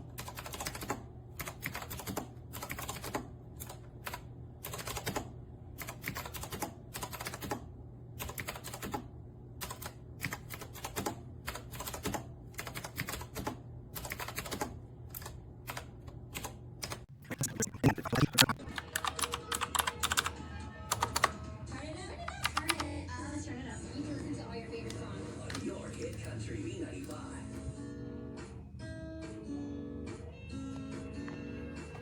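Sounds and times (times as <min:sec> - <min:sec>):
mechanical keyboard typing: 0:00.2 - 0:07.6, 0:08.2 - 0:09.0, 0:09.6 - 0:20.3, 0:20.9 - 0:21.3, 0:22.3 - 0:22.9.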